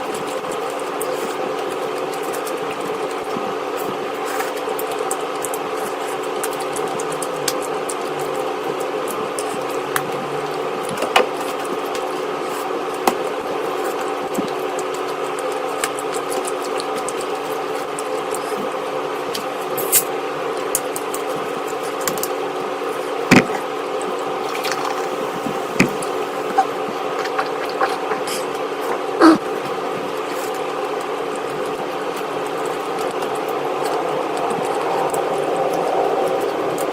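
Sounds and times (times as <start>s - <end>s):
droning hum: 6.7s - 12.2s, 24.3s - 28.7s
person eating wetly: 24.3s - 31.8s.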